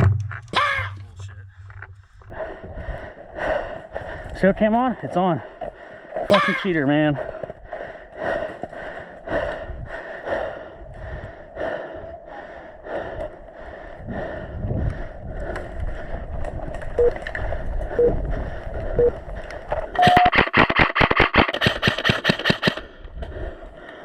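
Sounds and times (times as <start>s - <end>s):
person breathing hard: 1.1s - 16.7s, 17.5s - 20.0s, 22.6s - 24.0s
short tones: 20.0s - 20.7s
airsoft gunfire burst: 20.0s - 22.8s.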